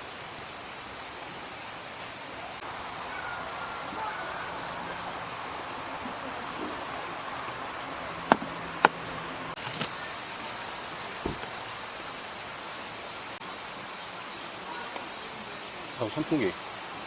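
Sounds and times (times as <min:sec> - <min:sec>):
insects chirring: 0:00.0 - 0:17.0
soft low thump: 0:11.2 - 0:11.6.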